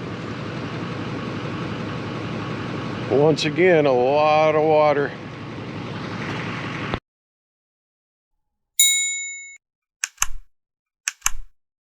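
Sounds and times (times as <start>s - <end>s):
in-car road noise: 0.0s - 7.0s
bright ding: 8.8s - 9.6s
quick double clicks: 10.0s - 10.5s, 11.1s - 11.5s.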